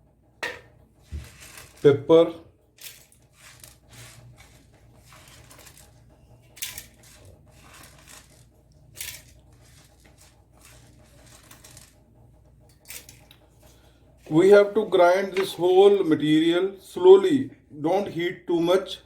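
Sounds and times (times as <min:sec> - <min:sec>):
spices rattling into steel jar: 0:06.6 - 0:12.0.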